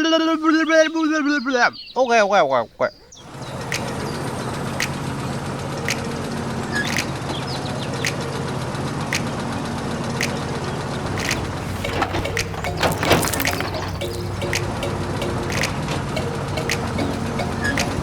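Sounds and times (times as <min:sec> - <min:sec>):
small engine idling: 0:03.3 - 0:18.0
sharp engine tick: 0:03.7 - 0:05.2, 0:05.8 - 0:08.4, 0:14.1 - 0:18.0.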